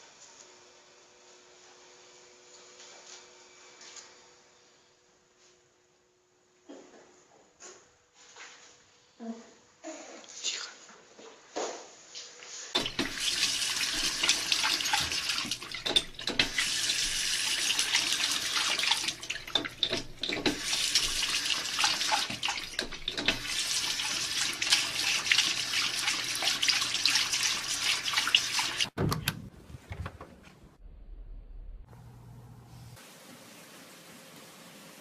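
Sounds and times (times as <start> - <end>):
running water splashing: 12.8 - 29.0.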